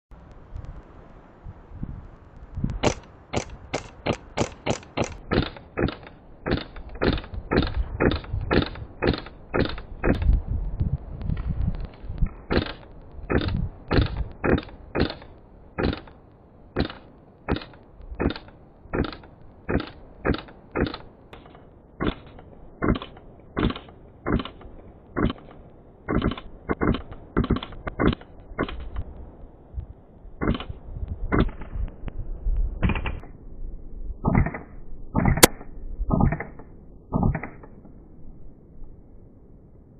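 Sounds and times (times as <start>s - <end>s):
sharp crack: 2.6s - 10.4s, 11.2s - 29.1s, 34.2s - 37.8s
airsoft rifle shots: 2.8s - 10.3s, 12.4s - 16.2s, 16.8s - 29.0s, 31.3s - 31.7s, 34.2s - 37.7s.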